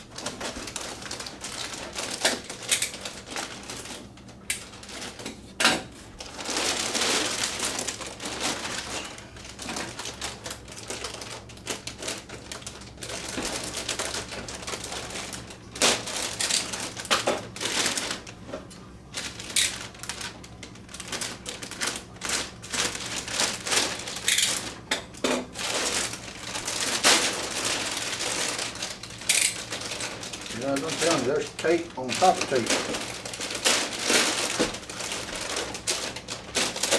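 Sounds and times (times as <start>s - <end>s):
packing tape peeling: 0.1s - 5.2s, 19.1s - 24.8s, 25.6s - 36.9s.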